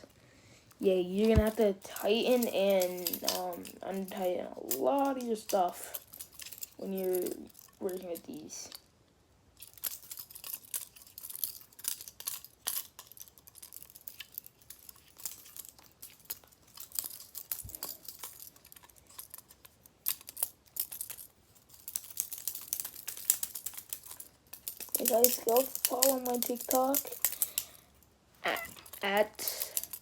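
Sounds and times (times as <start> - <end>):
butterfly knife clicking and clattering: 21.8 - 27.8, 28.4 - 30.0.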